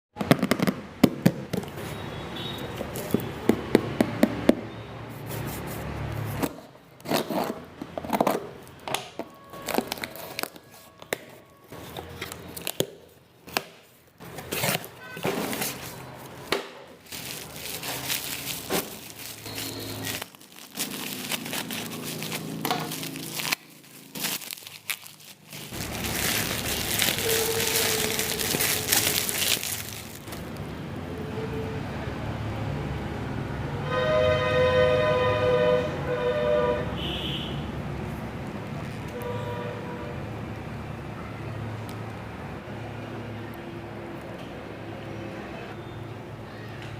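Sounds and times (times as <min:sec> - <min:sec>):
packaging crinkling and rustling: 0:02.7 - 0:03.4, 0:05.3 - 0:30.7.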